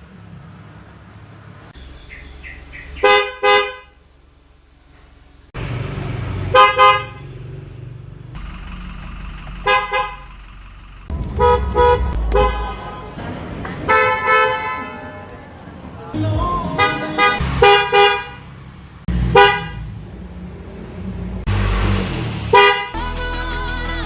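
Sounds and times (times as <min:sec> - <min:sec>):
car horns tooting: 0:01.8 - 0:13.2, 0:13.8 - 0:15.3, 0:16.7 - 0:23.3
low car hum: 0:01.8 - 0:14.7, 0:15.4 - 0:24.0.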